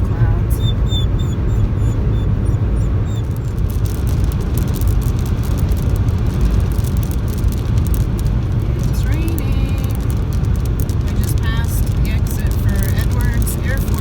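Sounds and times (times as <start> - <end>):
car road and engine rumble: 0.0 - 14.0
faint high chirps: 0.5 - 3.5.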